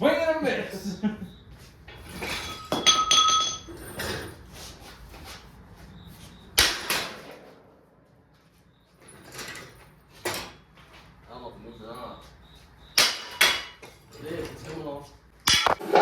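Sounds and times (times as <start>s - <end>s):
sledgehammer striking steel: 13.0s - 13.8s.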